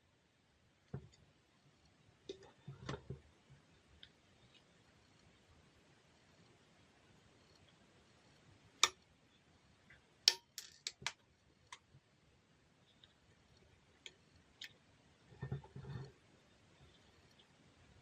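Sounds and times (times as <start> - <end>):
hard objects clicking and clinking: 10.3 - 11.2.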